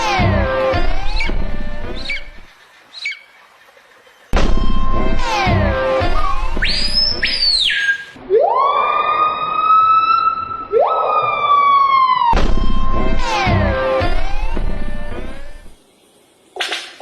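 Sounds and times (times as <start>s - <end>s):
siren-like wail: 4.4s - 6.6s, 8.2s - 15.1s.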